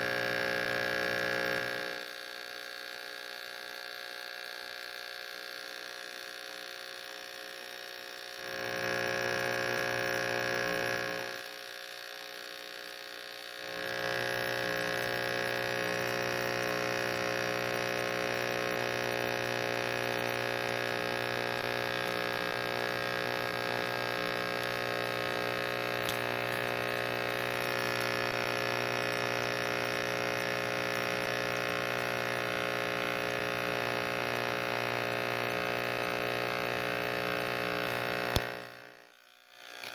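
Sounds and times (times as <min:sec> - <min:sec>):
pressure washer motor humming: 0:13.6 - 0:39.9.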